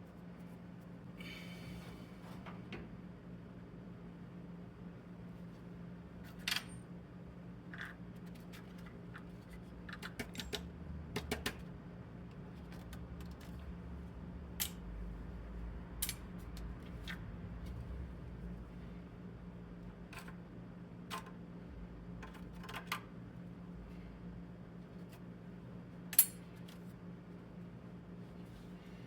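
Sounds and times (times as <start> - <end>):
steady low hum: 0.0 - 29.0
small parts clicking on workbench: 16.0 - 17.2, 26.1 - 26.8.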